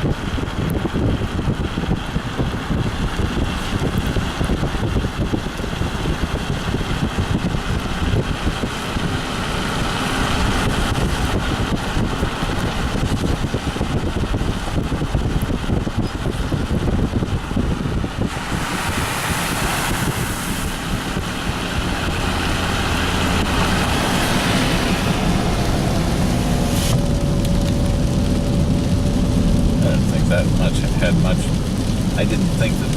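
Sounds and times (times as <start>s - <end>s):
car engine and tyres rumbling: 0.0s - 32.9s
water hissing under tyres: 17.4s - 32.9s.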